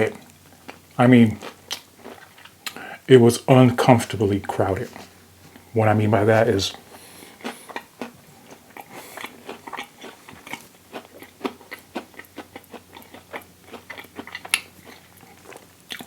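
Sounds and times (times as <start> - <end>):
close chewing mouth clicks: 0.1 - 2.9, 6.7 - 16.0.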